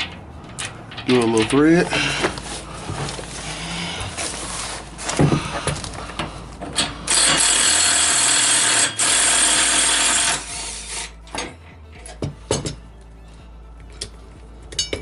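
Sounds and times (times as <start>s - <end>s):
handheld power tool running: 6.8s - 11.1s.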